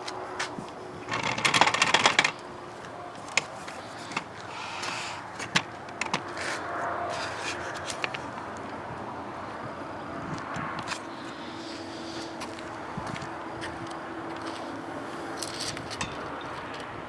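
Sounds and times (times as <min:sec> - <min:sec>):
metal clinks and knocks: 0:15.4 - 0:17.0
steel chain rattling: 0:15.4 - 0:17.0.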